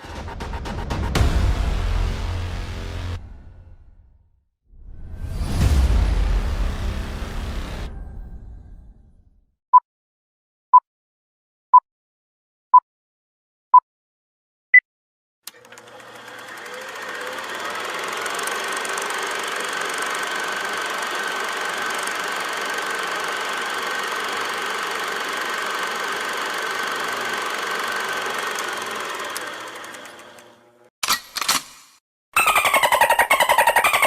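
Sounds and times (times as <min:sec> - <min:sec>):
engine running with rattle and whine: 0:15.5 - 0:30.9.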